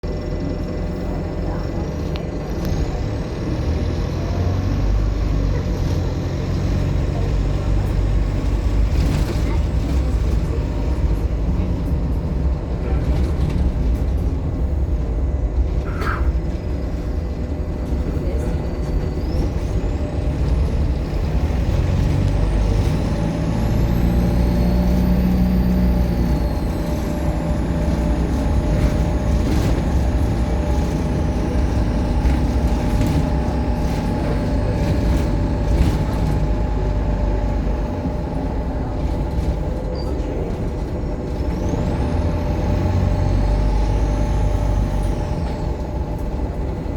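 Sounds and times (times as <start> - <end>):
bus diesel engine running: 0.0 - 46.9.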